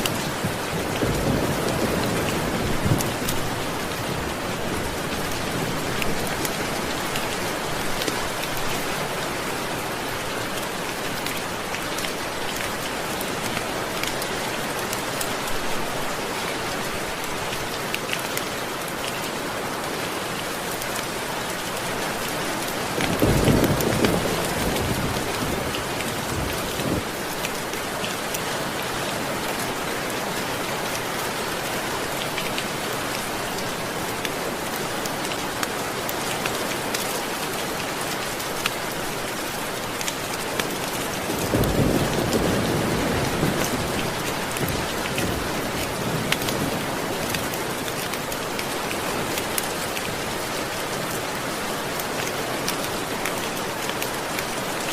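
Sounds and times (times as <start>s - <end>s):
steady rain: 0.0s - 54.9s
thunder rumbles: 41.3s - 47.0s.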